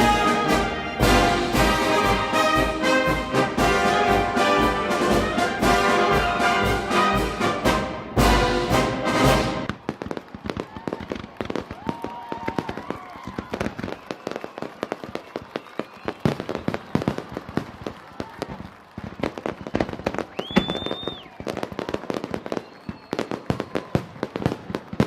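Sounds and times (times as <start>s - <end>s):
brass band march: 0.0s - 9.9s
fireworks popping and crackling: 9.6s - 25.0s
firework whistling: 11.8s - 17.3s, 19.4s - 24.2s.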